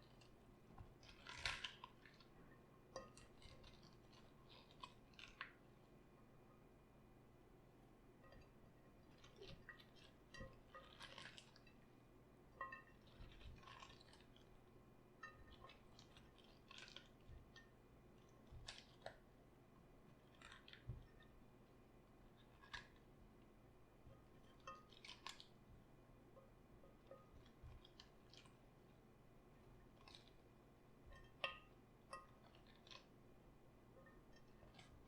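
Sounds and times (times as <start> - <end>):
raw cabbage crunching: 0.0 - 2.4, 3.0 - 5.6, 9.1 - 11.8, 13.0 - 14.6, 15.3 - 19.2, 20.2 - 21.0, 24.6 - 25.6, 27.1 - 28.6, 29.8 - 30.4, 32.2 - 33.2.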